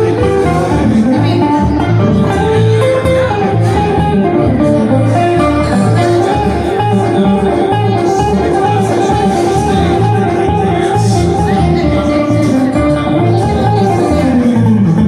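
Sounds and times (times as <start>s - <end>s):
picked guitar melody: 0.0s - 15.0s
strummed guitar chords: 0.0s - 15.0s
upright bass line: 0.0s - 15.0s.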